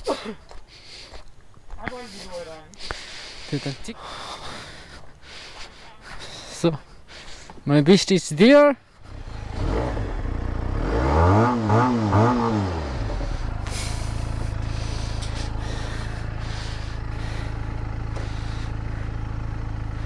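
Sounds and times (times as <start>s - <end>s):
motorcycle engine idling: 8.9s - 10.8s, 12.7s - 20.0s
motorcycle engine revving: 9.0s - 20.0s.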